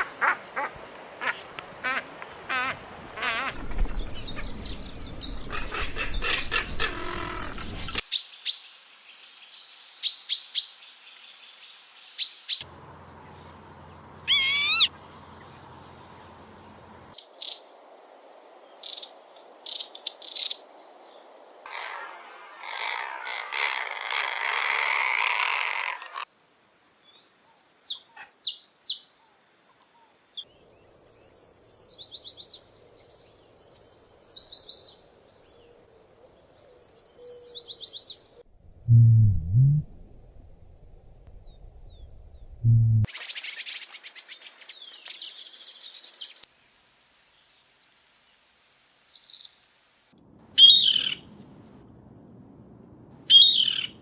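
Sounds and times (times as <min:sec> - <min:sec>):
birds calling: 0:00.0 - 0:08.3, 0:12.2 - 0:17.6, 0:50.6 - 0:51.3, 0:53.3 - 0:54.0.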